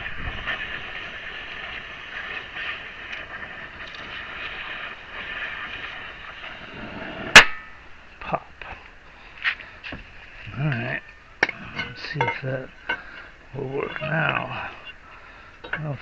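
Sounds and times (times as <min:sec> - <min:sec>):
torch flame hissing: 0:00.0 - 0:16.0
sharp loud pop: 0:07.3 - 0:07.8.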